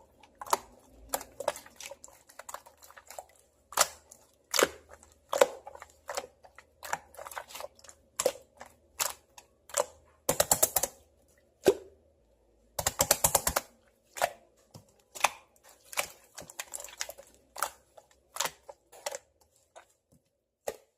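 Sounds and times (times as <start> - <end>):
slime clicking and popping: 3.7 - 7.1, 8.2 - 11.0, 12.8 - 14.4.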